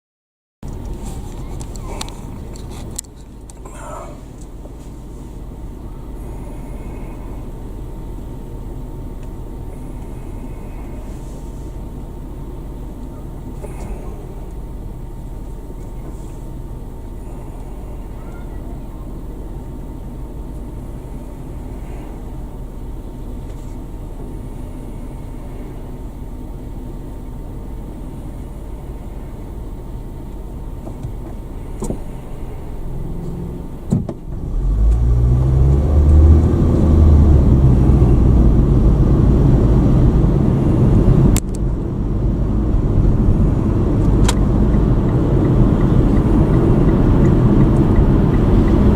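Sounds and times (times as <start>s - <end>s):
car engine accelerating: 0.6s - 48.9s
road noise: 0.6s - 48.9s
click: 41.4s - 41.6s.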